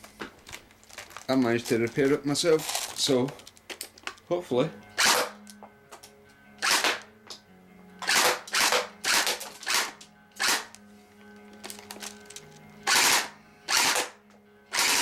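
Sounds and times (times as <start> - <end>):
faint background music: 0.0 - 15.0
airsoft gun firing bursts: 5.0 - 5.4, 6.6 - 7.0, 8.0 - 10.7, 12.9 - 14.2, 14.8 - 15.0.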